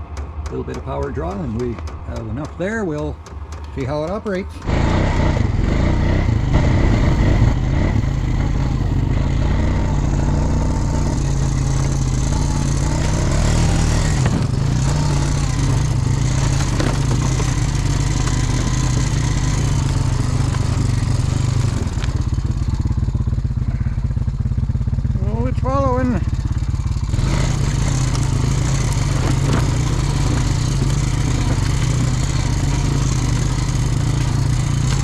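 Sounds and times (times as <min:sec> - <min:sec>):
atv engine running: 0:00.0 - 0:35.0.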